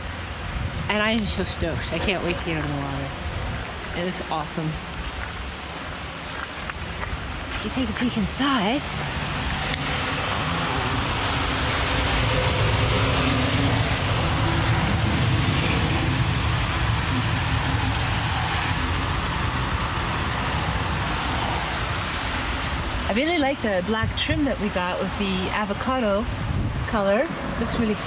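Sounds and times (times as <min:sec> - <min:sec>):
highway traffic noise: 0:00.0 - 0:28.0
vehicle passing: 0:01.6 - 0:23.7.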